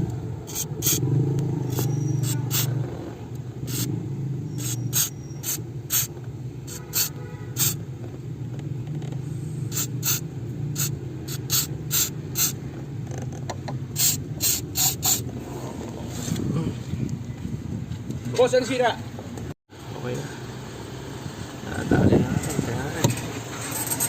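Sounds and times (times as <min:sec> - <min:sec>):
clutch pedal rasping rubs: 0:01.7 - 0:03.0, 0:03.6 - 0:03.9, 0:04.6 - 0:07.8.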